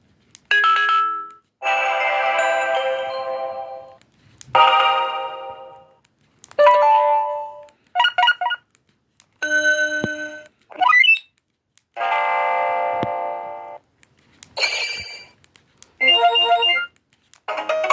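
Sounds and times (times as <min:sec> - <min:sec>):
phone ringtone chimes: 0:09.4 - 0:10.4, 0:16.0 - 0:16.9
quick beeps: 0:16.0 - 0:16.9.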